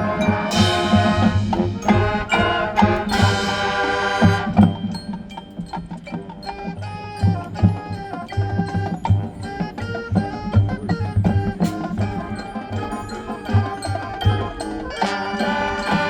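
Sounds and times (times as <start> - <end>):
mallet percussion notes: 0.0 - 16.0
marching band playing: 0.0 - 16.0
cymbal crashes: 0.5 - 4.8.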